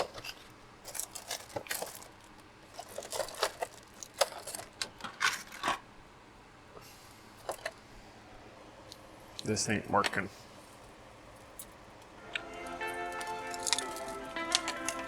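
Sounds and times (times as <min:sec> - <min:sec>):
small objects clicking and rustling: 0:00.0 - 0:05.8, 0:13.2 - 0:15.0.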